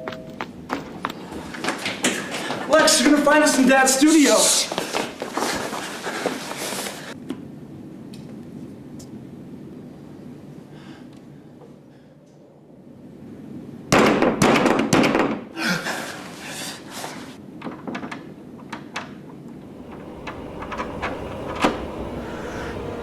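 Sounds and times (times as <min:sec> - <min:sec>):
hissing rustle: 0:19.7 - 0:23.0.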